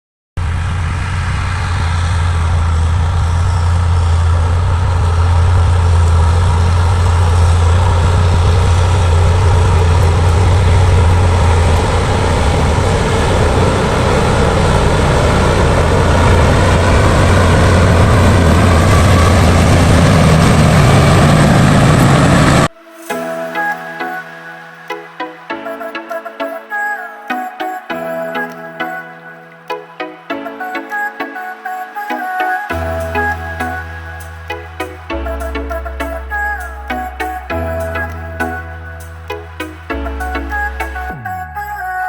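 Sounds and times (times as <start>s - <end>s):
diesel engine running: 0.4s - 22.7s.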